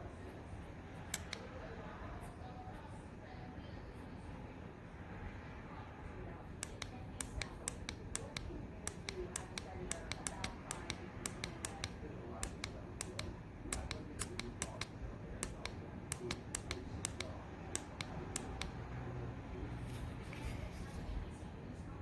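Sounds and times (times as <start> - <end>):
faint background murmur: 0.0 - 22.0
rapid sharp clicks: 1.1 - 1.5, 6.6 - 18.8.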